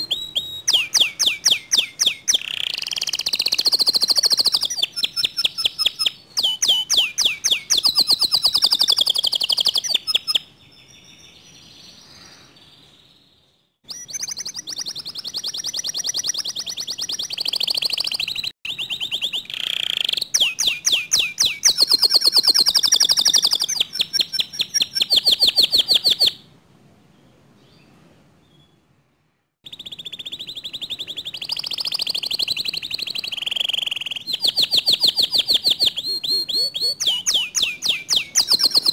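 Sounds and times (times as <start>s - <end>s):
canary singing: 0.0s - 12.0s, 13.8s - 26.5s, 29.6s - 38.9s.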